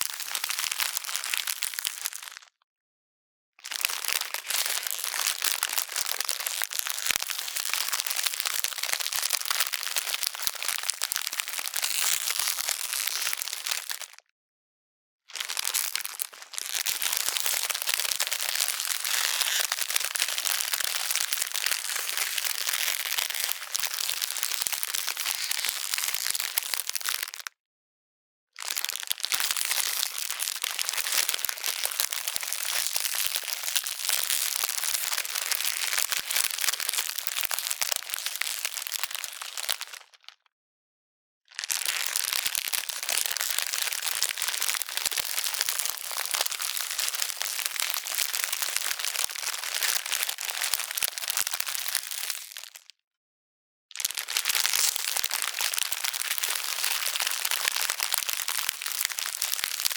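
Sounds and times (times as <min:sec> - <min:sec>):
ice cracking and crunching: 0:17.0 - 0:26.4.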